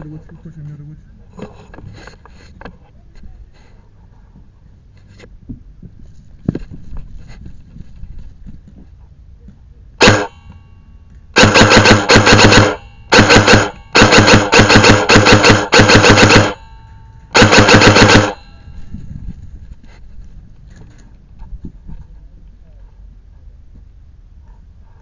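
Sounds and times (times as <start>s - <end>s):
airsoft rifle bursts: 10.0s - 10.5s, 11.4s - 18.6s.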